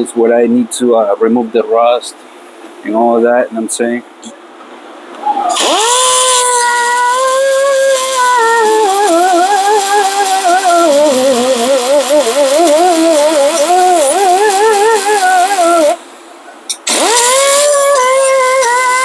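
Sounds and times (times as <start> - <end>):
cut-off wheel grinding metal: 5.5 - 16.0, 16.7 - 19.0.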